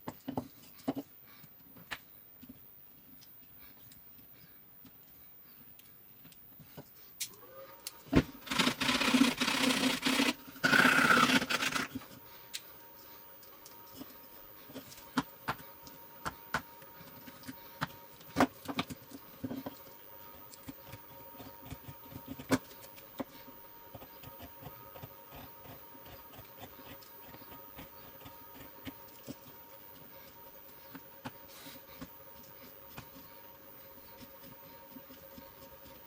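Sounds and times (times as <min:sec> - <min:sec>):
chisel cutting wood: 0:08.4 - 0:12.0.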